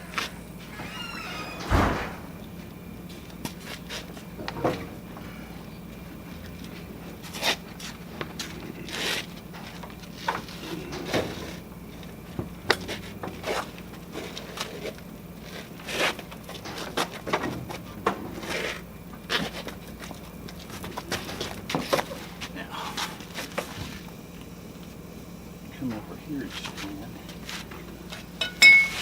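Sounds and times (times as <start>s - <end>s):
low machine hum: 0.0s - 29.0s
steel pieces knocking and scraping: 28.4s - 29.0s.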